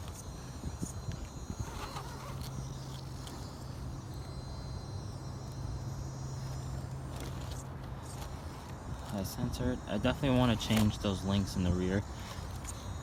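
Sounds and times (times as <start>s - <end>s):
electric motor and gears humming: 0.0s - 13.0s.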